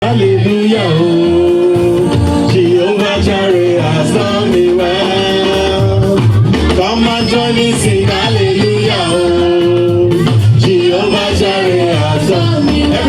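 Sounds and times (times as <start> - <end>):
steady bass line: 0.0 - 13.0
regular percussion: 0.4 - 13.0.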